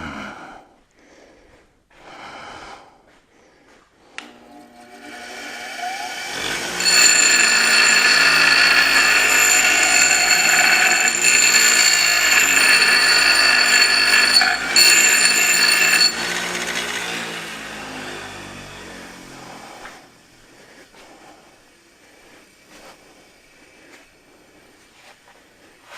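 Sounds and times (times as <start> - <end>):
grinder cutting steel: 4.8 - 18.2
high ringing tones: 6.8 - 17.3.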